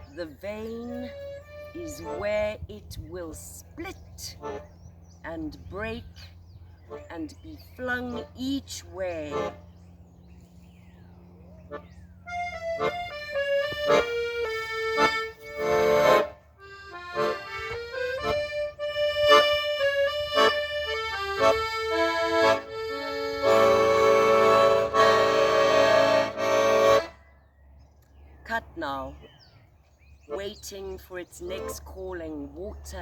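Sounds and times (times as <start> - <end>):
melody of held notes: 11.4 - 27.2.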